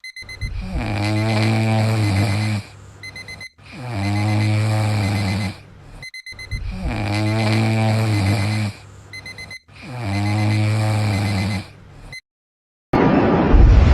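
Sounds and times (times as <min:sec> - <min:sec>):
low drawn-out snores: 0:00.4 - 0:02.8, 0:03.6 - 0:06.0, 0:06.6 - 0:09.0, 0:09.7 - 0:12.2.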